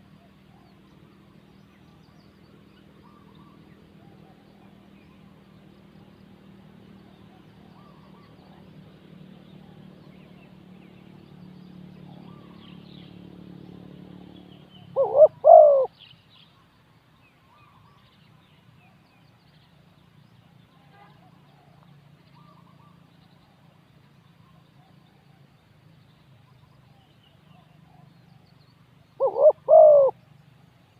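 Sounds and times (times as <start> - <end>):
small birds chirping: 0.0 - 30.9
dove cooing: 14.9 - 15.9, 29.2 - 30.2.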